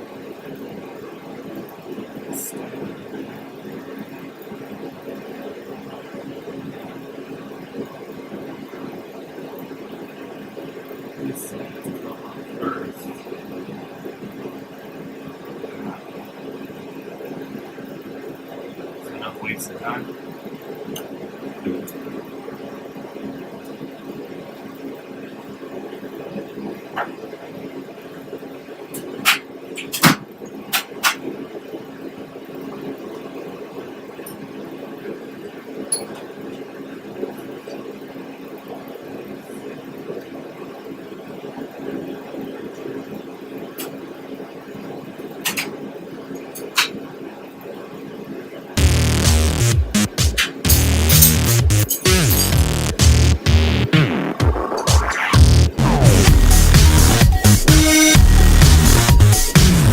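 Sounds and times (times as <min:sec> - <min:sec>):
mechanical hum: 0:00.0 - 0:59.9
motor humming: 0:48.8 - 0:59.9.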